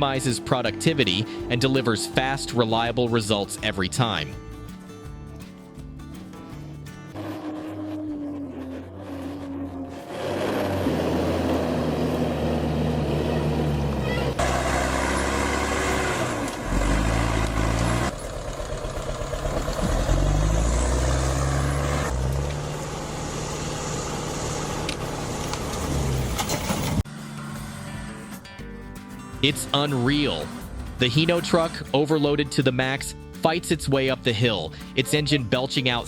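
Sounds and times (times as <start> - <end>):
heavy vehicle engines under load: 7.1 - 28.4.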